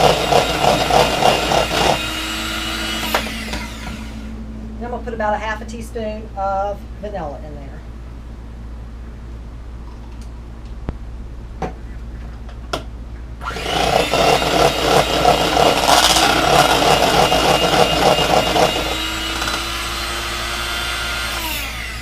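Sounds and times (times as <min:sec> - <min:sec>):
electric mixer running: 0:00.0 - 0:04.4, 0:13.4 - 0:22.0.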